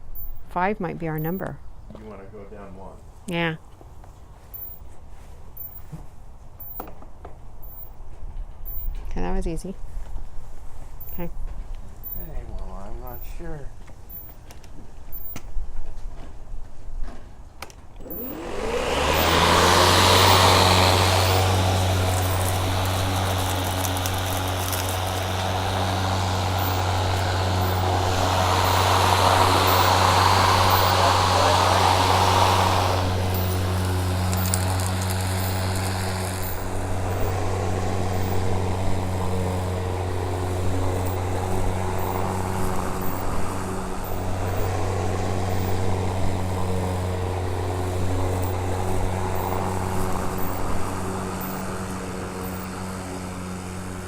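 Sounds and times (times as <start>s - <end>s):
lawn mower motor humming: 0.0s - 0.6s, 4.6s - 4.8s, 6.6s - 6.9s, 7.6s - 7.9s, 11.0s - 11.3s, 12.0s - 12.4s, 14.1s - 14.4s, 18.0s - 54.0s
mower cutting grass: 4.6s - 4.8s, 5.6s - 5.9s, 6.6s - 6.9s, 7.6s - 7.9s, 11.0s - 11.3s, 12.0s - 13.4s, 18.0s - 54.0s.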